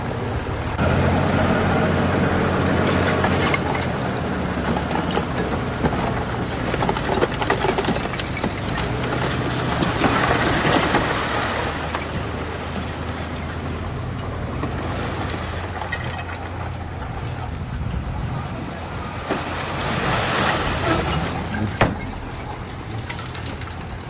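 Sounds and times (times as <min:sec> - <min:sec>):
diesel engine of heavy machinery: 0:00.0 - 0:24.0.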